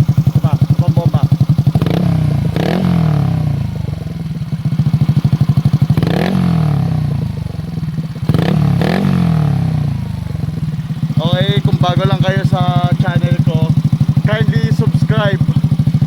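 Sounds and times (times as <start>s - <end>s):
scooter engine revving and idling: 0.0s - 16.0s.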